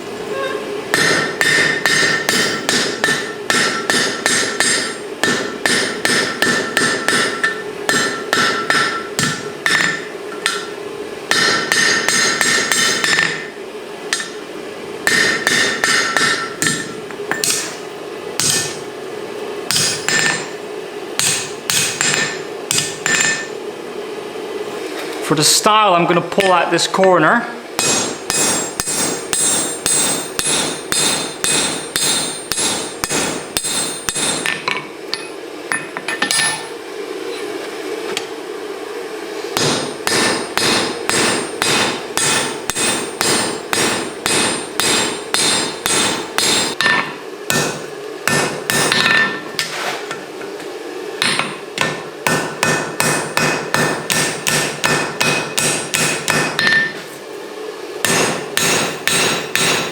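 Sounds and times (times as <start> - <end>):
steady hum: 0.0 - 59.9
hammer ringing on anvil: 0.4 - 13.5, 14.1 - 14.4, 15.1 - 17.8, 18.4 - 18.8, 19.7 - 20.5, 21.2 - 23.5, 27.8 - 36.7, 39.6 - 49.4, 51.2 - 57.0, 58.0 - 59.9.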